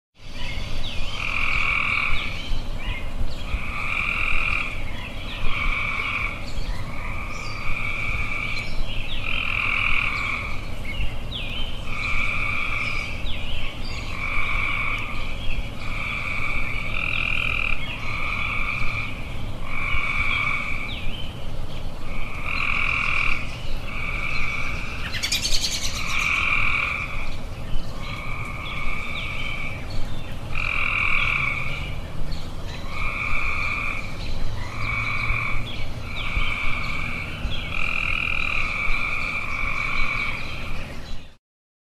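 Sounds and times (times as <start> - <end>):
tree frogs calling: 0.2 - 41.4.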